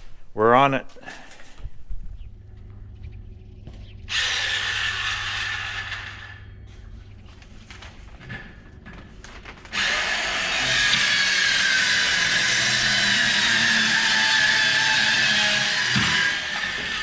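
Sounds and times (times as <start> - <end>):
power saw cutting plywood: 9.7 - 17.0.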